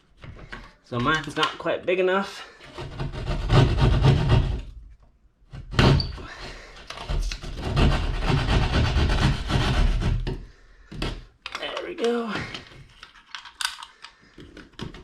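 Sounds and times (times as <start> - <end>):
hand saw rasping through drywall: 2.5 - 4.8, 5.8 - 10.6.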